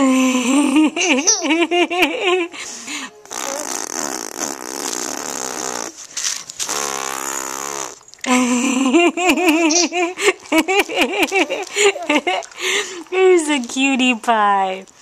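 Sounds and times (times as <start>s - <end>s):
woman blowing raspberry: 3.2s - 8.9s.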